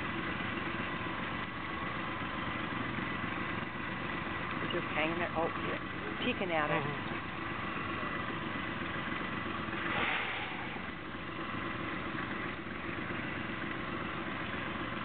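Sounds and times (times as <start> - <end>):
boat engine idling: 0.0 - 15.0
brief rush of noise: 9.9 - 10.8.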